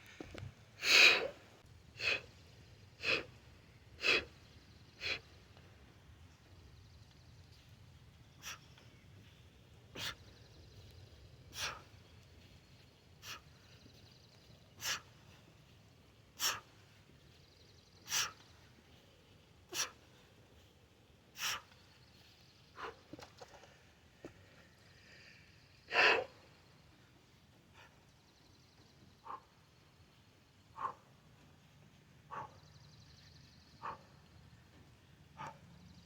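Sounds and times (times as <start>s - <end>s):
sharp forceful exhalations: 0.8s - 1.4s.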